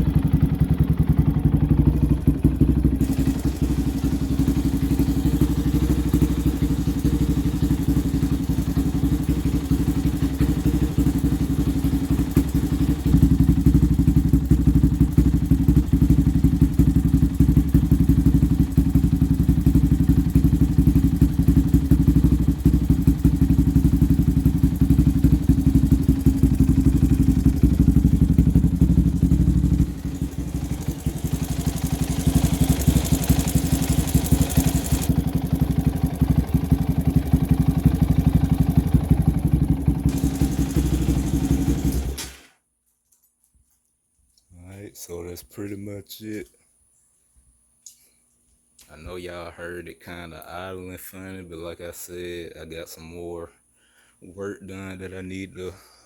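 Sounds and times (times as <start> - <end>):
atv engine idling roughly: 0.0 - 42.4.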